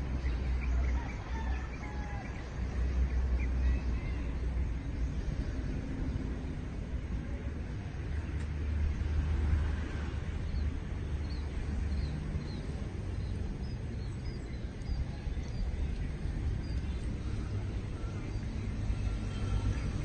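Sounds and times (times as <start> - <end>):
low steady rumble: 0.0 - 20.0.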